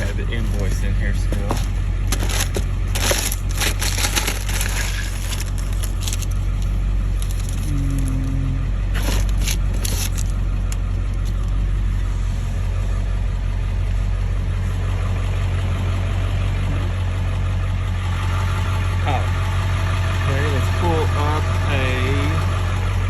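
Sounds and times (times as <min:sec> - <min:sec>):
pickup truck engine idling: 0:00.0 - 0:23.0.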